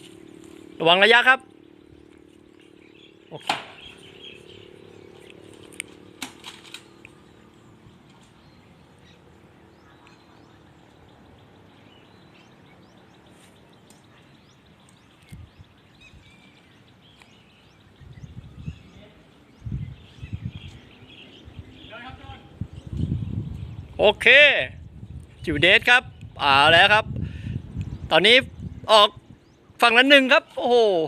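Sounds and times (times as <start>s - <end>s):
faint bird chirps: 0.0s - 23.8s
sharp snaps: 3.3s - 3.8s.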